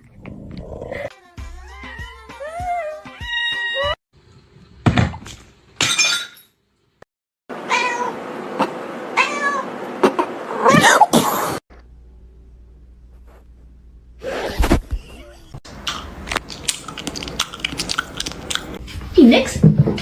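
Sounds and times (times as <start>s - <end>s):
cat meowing: 1.6s - 4.0s, 7.7s - 8.2s, 9.2s - 9.7s
low hum: 11.7s - 14.2s.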